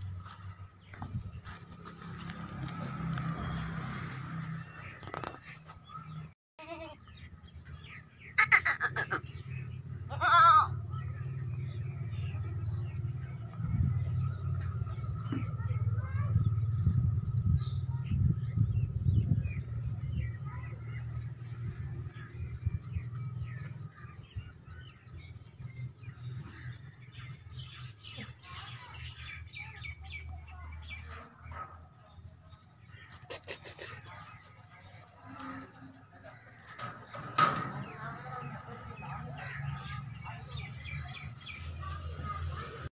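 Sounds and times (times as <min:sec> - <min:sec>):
small birds chirping: 0:00.0 - 0:42.9
goat bleating: 0:06.6 - 0:07.1, 0:10.1 - 0:10.7.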